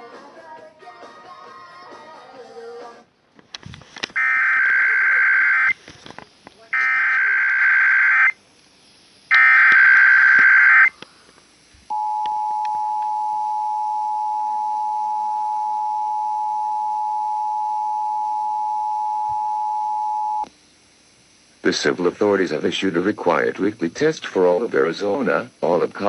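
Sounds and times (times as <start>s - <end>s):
harsh buzzing data screech: 4.2s - 5.8s, 6.7s - 8.4s, 9.2s - 11.0s.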